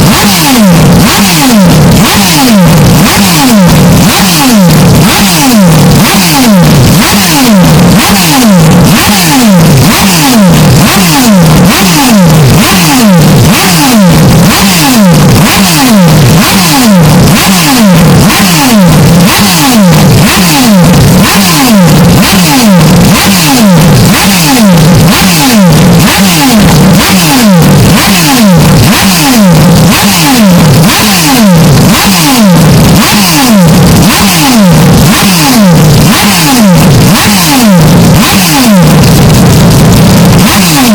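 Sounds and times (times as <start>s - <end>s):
distorted racing engine downshifts: 0.0s - 40.9s.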